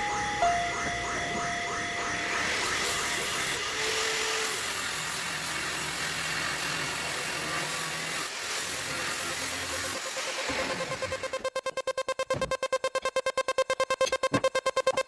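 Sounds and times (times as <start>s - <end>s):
metalworking tool hissing: 2.3s - 10.8s.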